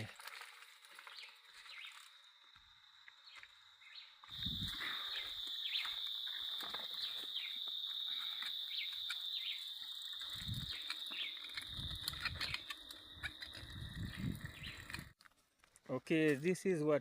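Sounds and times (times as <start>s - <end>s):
footsteps through brush: 0.0s - 12.7s
insects droning: 0.0s - 15.2s.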